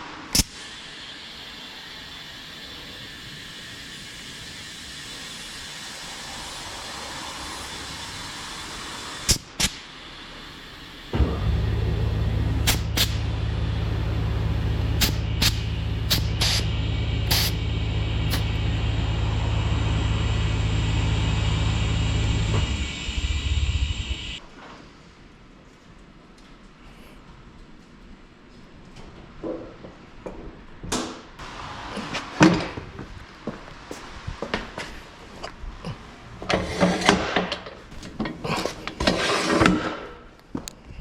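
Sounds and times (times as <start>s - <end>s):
machine hum: 10.0s - 24.4s.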